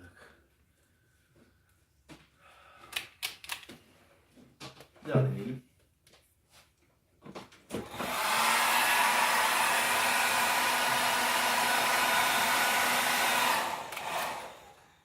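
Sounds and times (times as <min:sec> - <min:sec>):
hair dryer blowing: 0:07.7 - 0:15.0.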